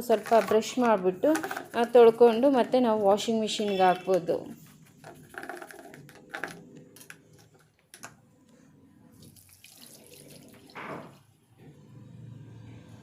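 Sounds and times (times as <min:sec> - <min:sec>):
water running from a tap into a jug: 0:09.2 - 0:11.1.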